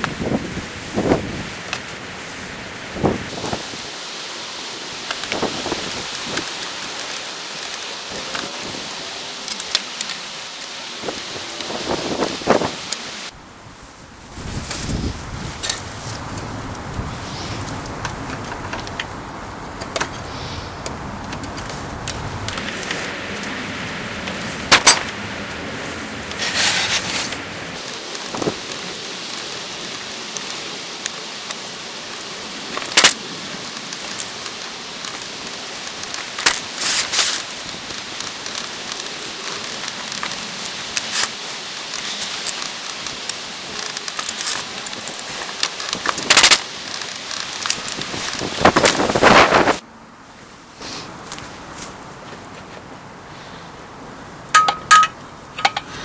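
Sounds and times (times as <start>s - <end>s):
steady hiss: 0.0s - 56.0s
tools and engine parts clinking: 54.5s - 56.0s.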